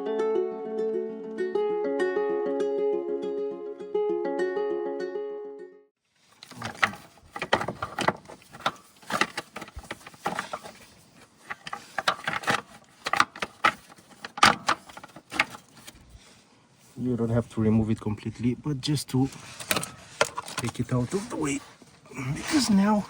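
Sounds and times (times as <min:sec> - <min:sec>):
plastic clicks and rattles: 0:06.4 - 0:16.0.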